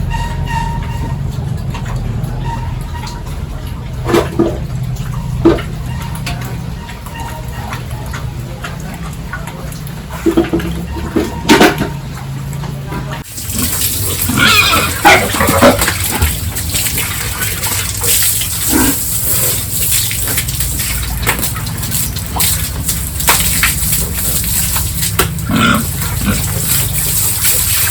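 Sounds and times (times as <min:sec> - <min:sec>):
running water: 0:00.0 - 0:27.9
pigs grunting and squealing: 0:13.2 - 0:27.9.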